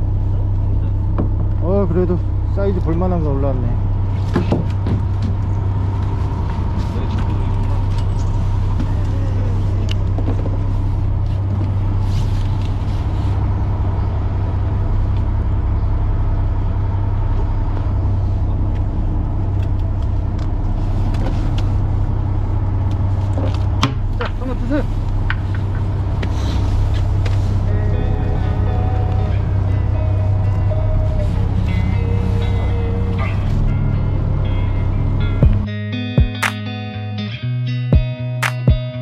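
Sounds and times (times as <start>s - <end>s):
boat engine humming: 0.0s - 36.8s
sharp knock: 38.4s - 38.8s.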